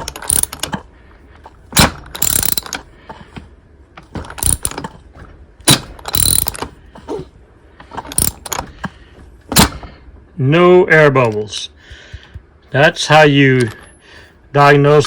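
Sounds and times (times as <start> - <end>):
outboard engine crank clattering: 0.0 - 0.9, 1.7 - 2.9, 4.0 - 5.0, 5.7 - 6.8, 7.8 - 8.8.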